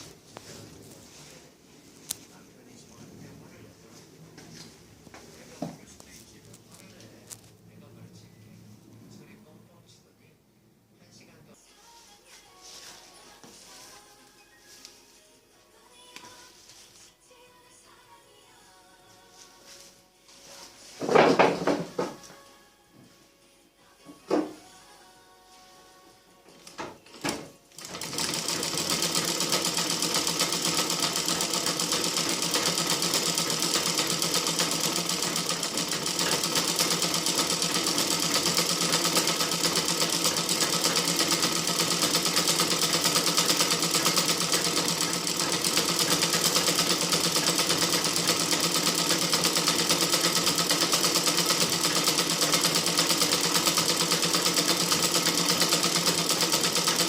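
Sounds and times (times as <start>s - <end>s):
sewing machine stitching: 27.1s - 57.0s.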